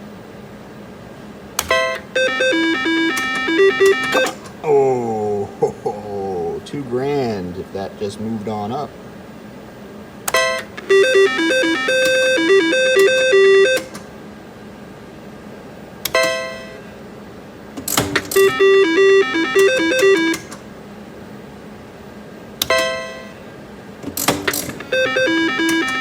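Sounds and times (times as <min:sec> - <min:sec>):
stepping beep tune: 0:01.7 - 0:04.4, 0:10.4 - 0:13.9, 0:18.4 - 0:20.4, 0:24.9 - 0:26.0.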